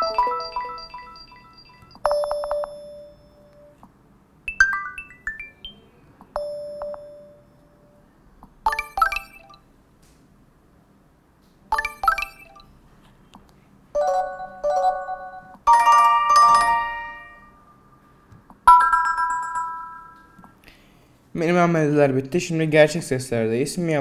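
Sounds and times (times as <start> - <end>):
electronic ringtone chimes: 0.0 - 3.8, 4.5 - 8.0, 8.7 - 9.6, 11.7 - 12.7, 14.0 - 17.8, 18.7 - 20.4.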